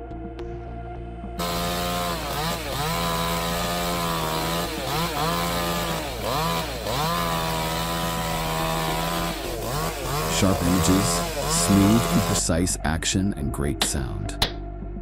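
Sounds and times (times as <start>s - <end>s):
chainsaw cutting wood: 1.4s - 12.5s.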